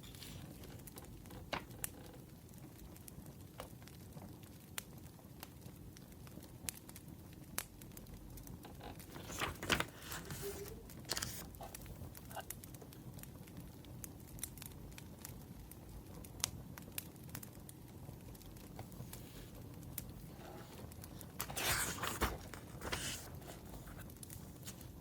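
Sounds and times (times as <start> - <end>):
paper rustling: 0.0 - 0.7, 9.0 - 12.4, 18.8 - 25.0
wood fire crackling and popping: 0.4 - 9.2, 10.8 - 21.5.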